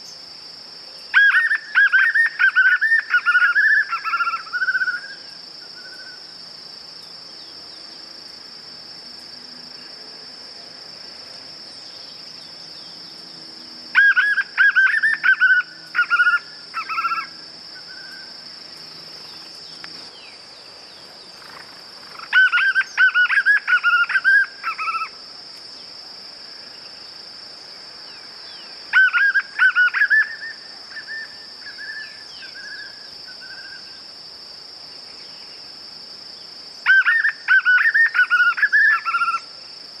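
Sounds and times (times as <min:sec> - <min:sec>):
high insect drone: 0:00.0 - 0:40.0.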